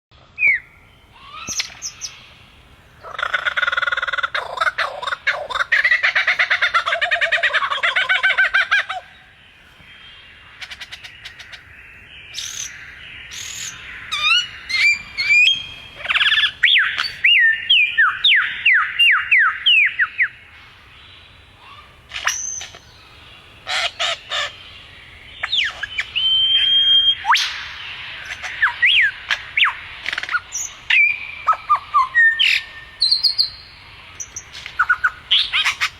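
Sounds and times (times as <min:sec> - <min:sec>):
bird chattering and whistling: 0:03.0 - 0:09.2, 0:12.3 - 0:20.4, 0:23.6 - 0:24.7, 0:25.4 - 0:35.9.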